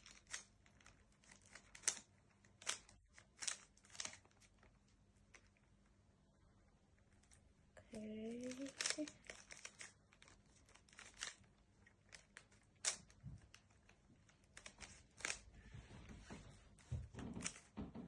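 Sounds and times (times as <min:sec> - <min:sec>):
puzzle cube clicking as turned: 0:00.0 - 0:04.6, 0:08.4 - 0:15.4.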